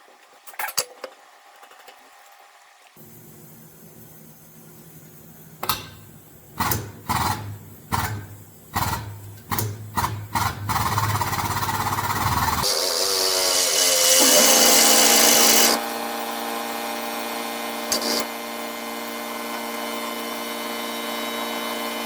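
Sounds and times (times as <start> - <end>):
power tool running: 10.0 - 22.0.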